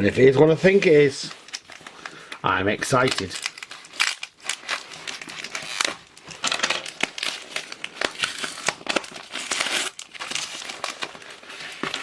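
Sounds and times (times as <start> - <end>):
cardboard parcel tearing: 2.8 - 12.0.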